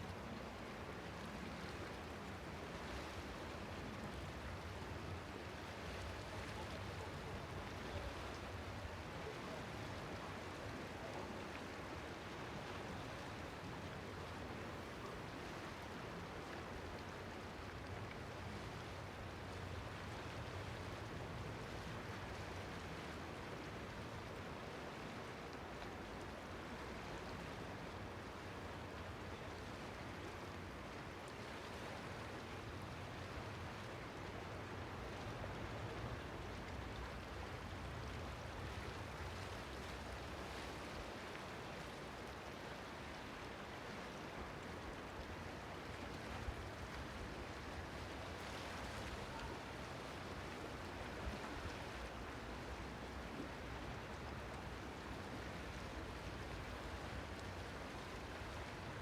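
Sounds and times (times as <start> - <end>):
waves lapping: 34.2 - 59.0.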